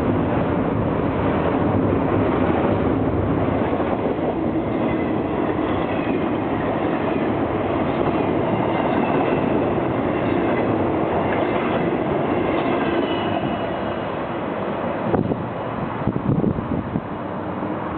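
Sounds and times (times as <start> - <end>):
train wheels rumbling on rails: 0.0 - 17.9
high squealing of wheels: 12.7 - 14.1.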